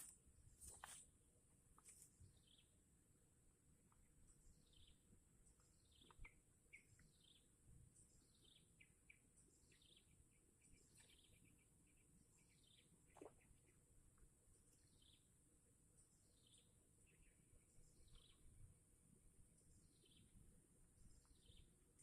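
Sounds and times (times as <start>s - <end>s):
bird chirps: 5.6s - 13.8s, 16.1s - 18.6s, 21.0s - 21.7s.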